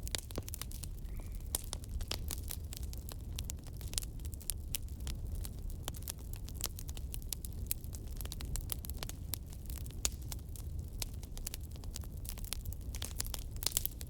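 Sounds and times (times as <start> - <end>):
fire crackling and popping: 0.0 - 14.0.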